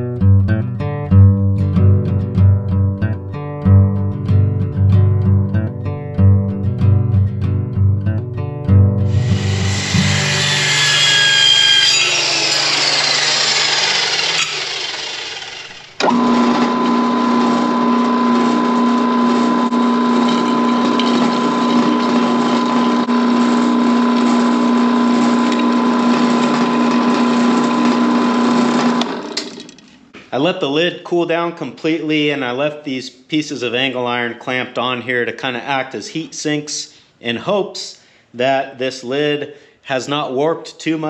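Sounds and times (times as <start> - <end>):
welding arc buzzing and crackling: 9.1 - 11.2, 16.4 - 29.6.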